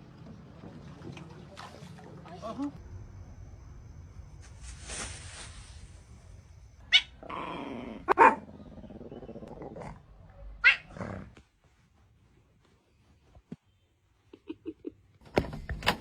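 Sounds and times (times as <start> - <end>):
dog barking: 8.1 - 8.5.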